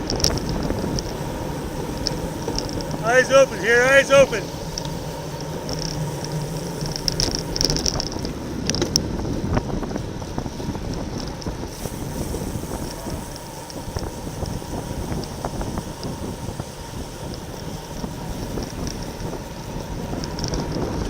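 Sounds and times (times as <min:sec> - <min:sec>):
wind rushing over microphone: 0:00.0 - 0:21.0.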